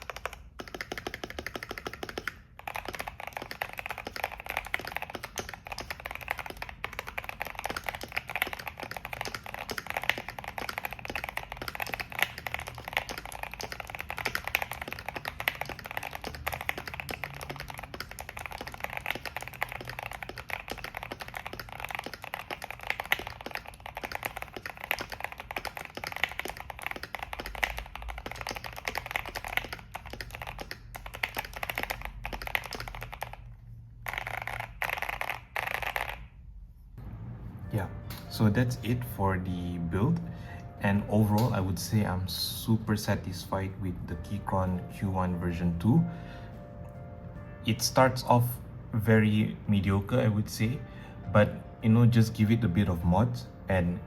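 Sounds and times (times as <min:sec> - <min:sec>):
fast mechanical keyboard typing: 0:00.0 - 0:36.5.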